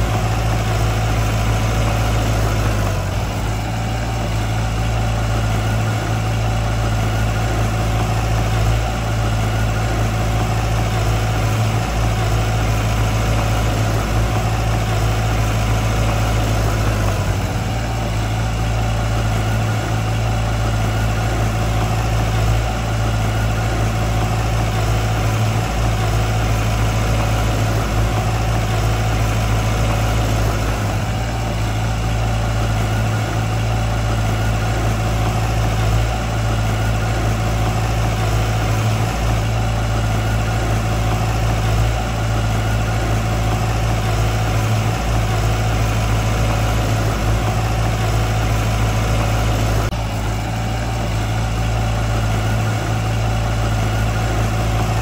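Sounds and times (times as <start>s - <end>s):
diesel engine of heavy machinery: 0.0s - 55.0s.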